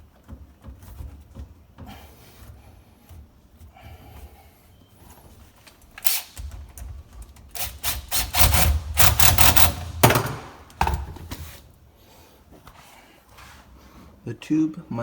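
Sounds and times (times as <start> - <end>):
hands handling plumbing parts: 0.0 - 7.6, 9.0 - 11.8.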